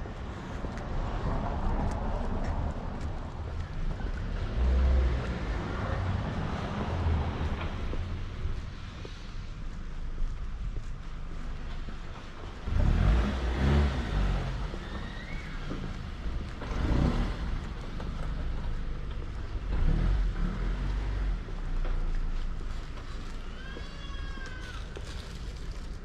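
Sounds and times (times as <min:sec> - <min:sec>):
cars passing: 0:00.0 - 0:26.0
low traffic hum: 0:00.0 - 0:26.0.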